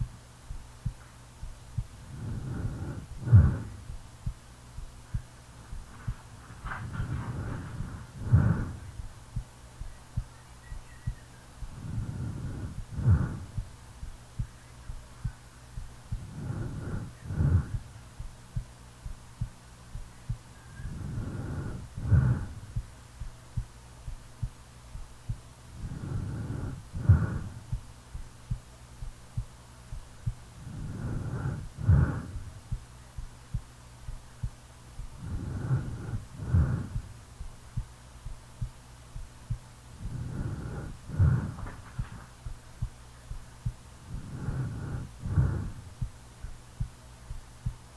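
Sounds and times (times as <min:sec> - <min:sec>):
heartbeat thumps: 0:00.0 - 0:47.9
person snoring: 0:02.0 - 0:03.9, 0:11.7 - 0:13.5, 0:16.2 - 0:17.9, 0:20.8 - 0:22.7, 0:25.7 - 0:27.6, 0:30.6 - 0:32.6, 0:35.2 - 0:37.2, 0:40.0 - 0:42.2, 0:44.1 - 0:45.9.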